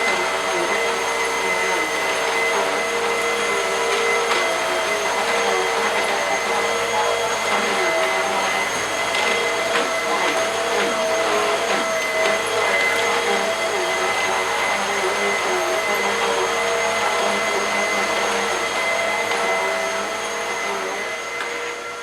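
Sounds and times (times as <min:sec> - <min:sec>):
vacuum cleaner running: 0:00.0 - 0:22.0.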